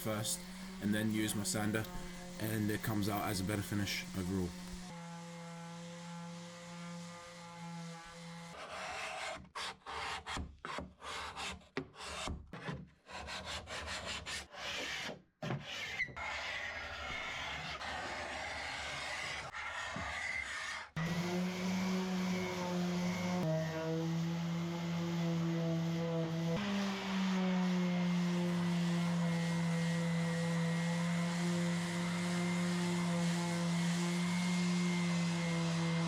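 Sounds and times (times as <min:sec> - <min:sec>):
rasping on wood: 0:00.0 - 0:04.9, 0:08.0 - 0:23.5
steady humming tone: 0:00.0 - 0:04.9.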